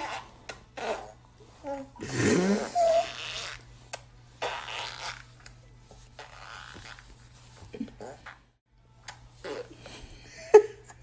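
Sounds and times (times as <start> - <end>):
raspberry blown through lips: 2.0 - 3.6.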